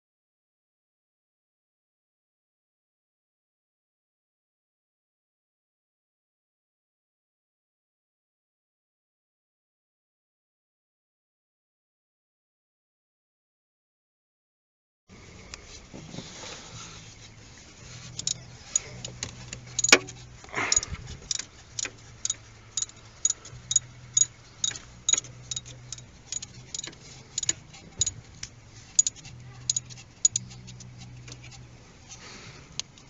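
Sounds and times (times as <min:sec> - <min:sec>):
low engine hum: 0:15.1 - 0:33.0.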